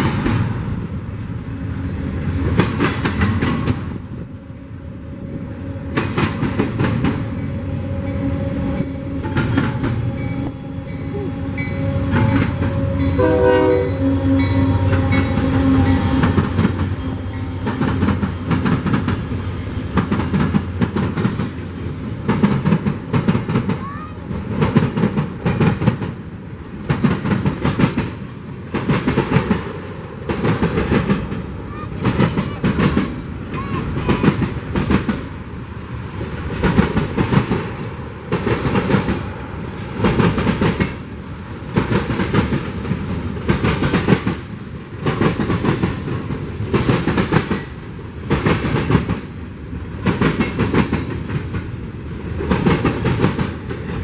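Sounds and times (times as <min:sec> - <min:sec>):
wheels clacking over rail joints: 0:00.0 - 0:04.8, 0:05.8 - 0:11.0, 0:11.6 - 0:54.0
freight train rumbling past: 0:00.0 - 0:54.0
train horn blast: 0:07.4 - 0:17.6.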